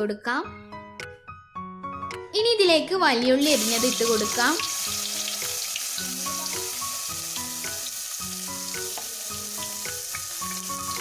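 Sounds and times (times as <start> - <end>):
background music with held notes: 0.0 - 11.0
onions sizzling in oil: 3.4 - 11.0.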